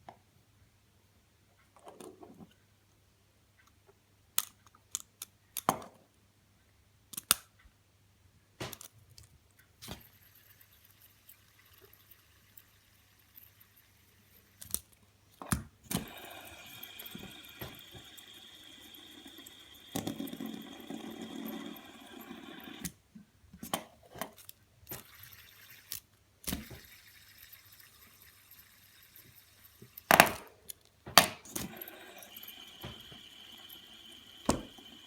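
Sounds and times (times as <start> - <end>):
fidget spinner whirring: 9.8 - 22.9, 24.3 - 35.0.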